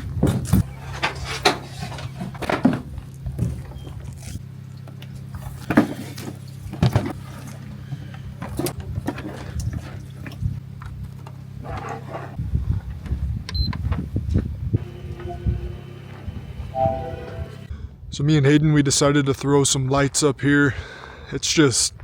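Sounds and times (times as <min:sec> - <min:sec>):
steady low hum: 0:14.4 - 0:17.7.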